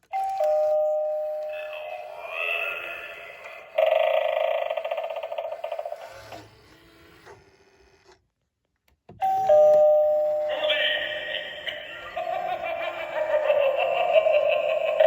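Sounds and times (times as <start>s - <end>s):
two-note doorbell chime: 0.2s - 1.5s, 9.2s - 10.5s.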